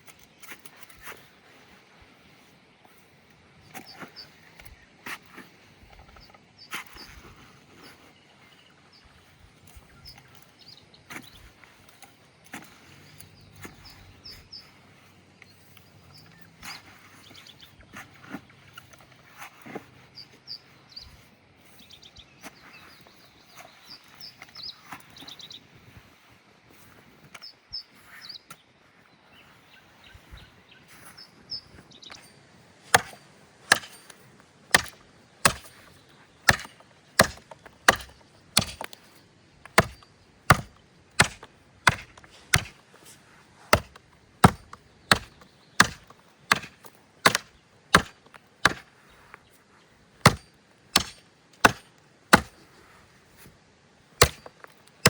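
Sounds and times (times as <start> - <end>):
birds chirping faintly: 0.0 - 55.0
chopping strikes into wood: 32.9 - 39.0, 39.7 - 42.8, 43.7 - 48.9, 50.2 - 52.6, 54.2 - 54.7.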